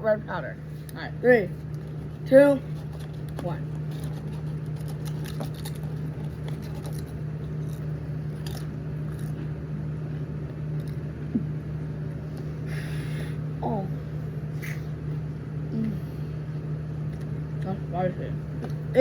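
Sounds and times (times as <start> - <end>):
steady low hum: 0.0 - 19.0
crunching and chewing chips: 2.8 - 9.6
breathy exhale: 12.6 - 13.4.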